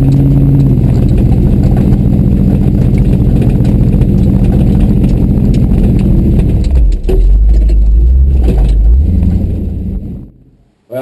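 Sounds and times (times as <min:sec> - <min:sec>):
tow truck engine running: 0:00.0 - 0:10.6.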